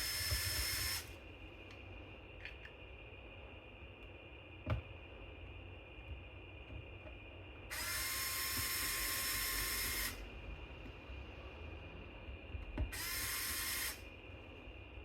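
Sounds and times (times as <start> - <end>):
electric screwdriver whining: 0.0 - 1.1, 7.7 - 10.2, 12.9 - 14.0.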